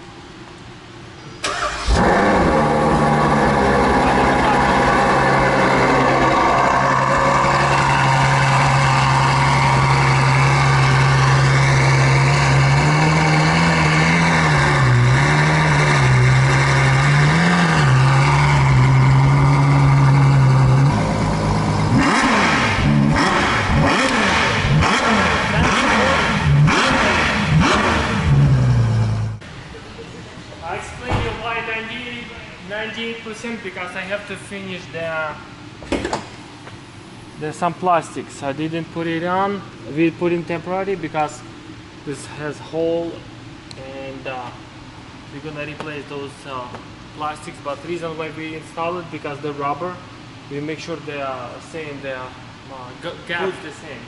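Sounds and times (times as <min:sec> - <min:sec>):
car engine starting and idling: 0:01.4 - 0:29.4
engine throttle blips: 0:01.4 - 0:29.5.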